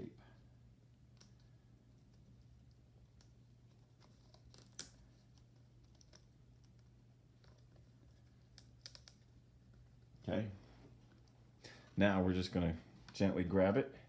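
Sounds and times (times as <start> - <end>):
faint clicks and taps: 1.0 - 10.1.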